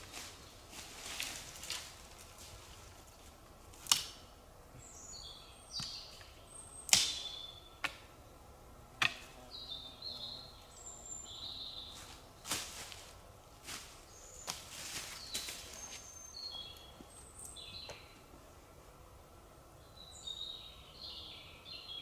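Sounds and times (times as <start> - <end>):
songbird singing: 4.7 - 12.8, 13.9 - 18.6, 19.6 - 22.0.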